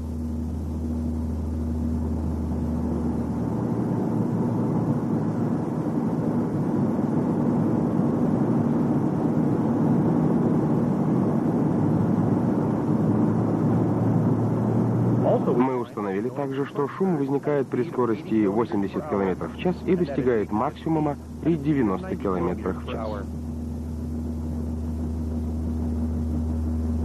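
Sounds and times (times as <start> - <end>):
car driving: 11.2 - 23.5.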